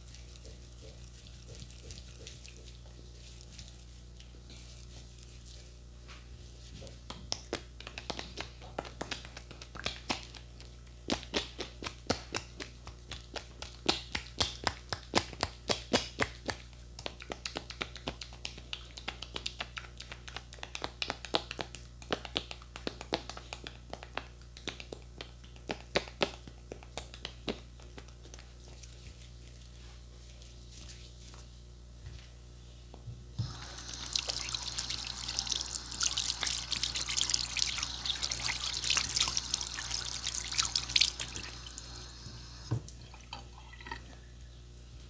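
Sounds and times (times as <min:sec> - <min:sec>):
hands tapping on skin: 0:11.1 - 0:28.1.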